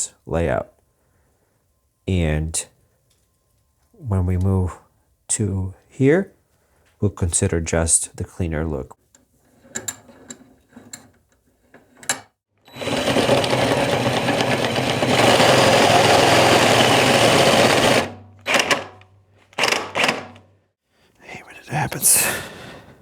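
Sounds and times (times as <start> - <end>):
electric drill drilling: 12.7 - 18.8.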